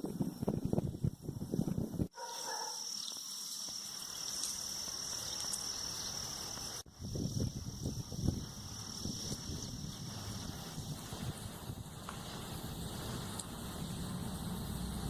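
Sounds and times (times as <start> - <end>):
wind buffeting microphone: 0.0 - 2.1, 6.8 - 15.0
crickets trilling: 2.1 - 15.0.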